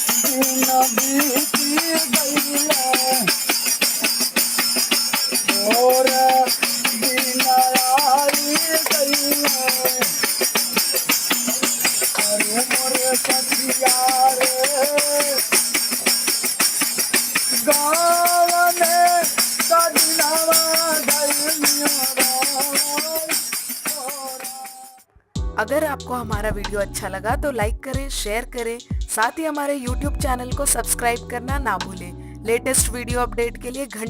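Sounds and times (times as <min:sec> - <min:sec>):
man singing: 0:00.0 - 0:04.4, 0:05.2 - 0:16.1, 0:17.4 - 0:25.0
jingling hand percussion: 0:00.0 - 0:25.1.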